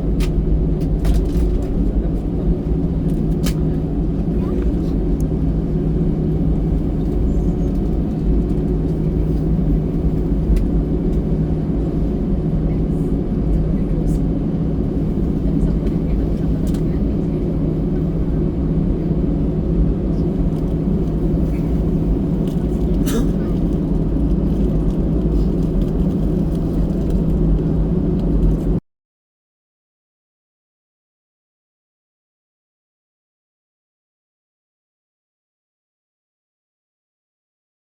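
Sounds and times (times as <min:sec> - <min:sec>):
vehicle interior rumble: 0:00.0 - 0:28.8.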